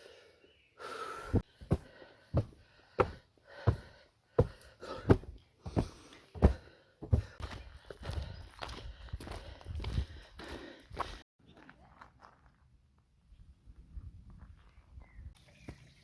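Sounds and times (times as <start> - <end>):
footsteps climbing stairs: 1.4 - 8.3.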